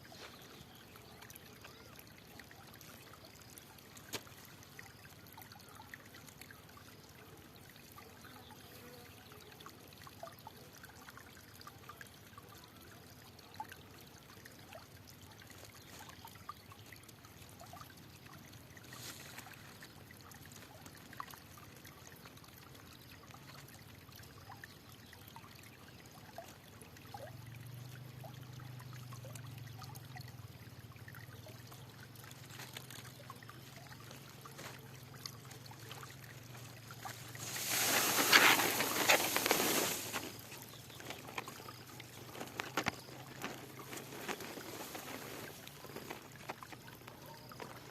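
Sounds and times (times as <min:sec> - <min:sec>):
faint trickling stream: 0:00.0 - 0:47.9.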